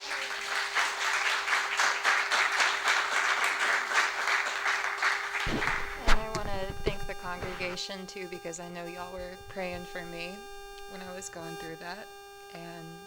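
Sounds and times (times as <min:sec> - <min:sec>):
congregation applauding: 0:00.0 - 0:06.5
faint steady hum: 0:00.0 - 0:13.0.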